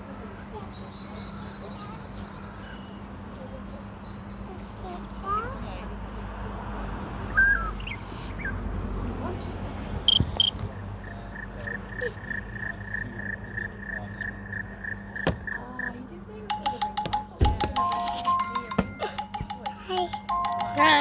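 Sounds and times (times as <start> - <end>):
bright chiming ringtone notes: 16.6 - 21.0.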